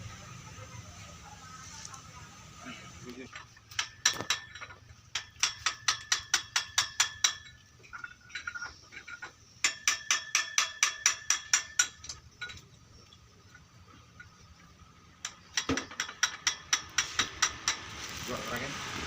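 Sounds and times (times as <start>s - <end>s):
hammer striking metal: 3.8s - 7.6s, 9.6s - 12.1s, 15.2s - 17.9s.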